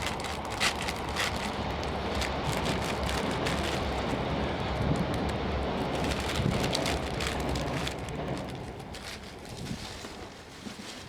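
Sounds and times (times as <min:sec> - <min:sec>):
wind on microphone: 0:01.5 - 0:08.2.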